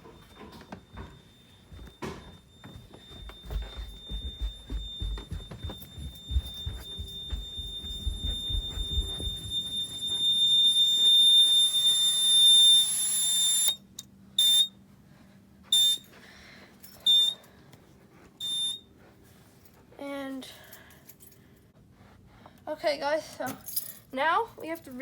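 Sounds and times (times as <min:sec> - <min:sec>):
fire alarm high-pitched tone: 0:00.0 - 0:14.8, 0:15.7 - 0:16.2, 0:16.9 - 0:17.5, 0:18.4 - 0:19.0
fire alarm short beeps: 0:00.0 - 0:14.8, 0:15.7 - 0:16.1, 0:17.0 - 0:17.4, 0:18.4 - 0:18.9.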